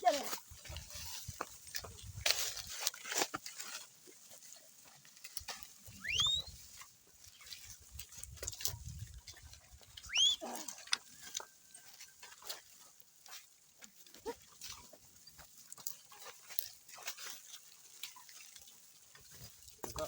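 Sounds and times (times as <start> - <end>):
animal call sweeping upward: 10.1 - 10.6.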